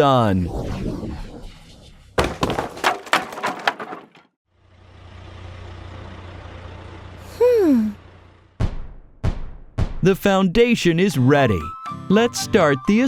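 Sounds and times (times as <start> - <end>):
low vehicle rumble: 4.5 - 8.9.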